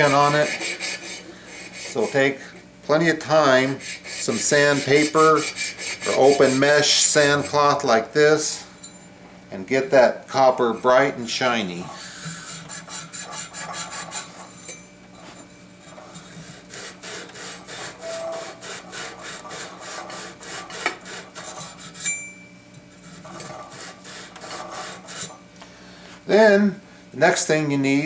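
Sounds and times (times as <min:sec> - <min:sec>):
sand cloth scrubbing copper pipe: 0:00.0 - 0:07.8, 0:10.5 - 0:14.6, 0:15.2 - 0:22.0, 0:23.0 - 0:25.4.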